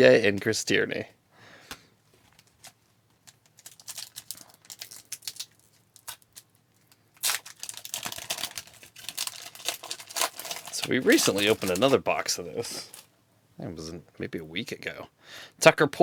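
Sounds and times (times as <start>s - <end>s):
foil card pack crinkling: 2.3s - 13.1s.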